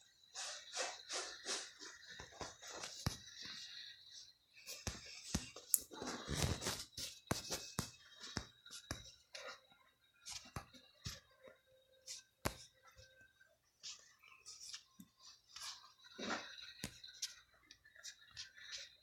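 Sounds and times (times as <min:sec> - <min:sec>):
scratchy drawing strokes on paper: 0:13.8 - 0:15.9.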